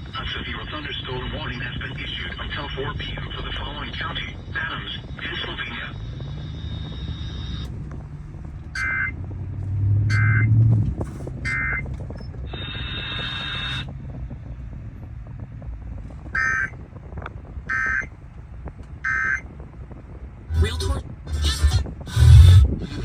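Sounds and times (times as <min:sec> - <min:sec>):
steady low hum: 0:20.4 - 0:23.0
sustained buzzy tone: 0:20.5 - 0:23.0.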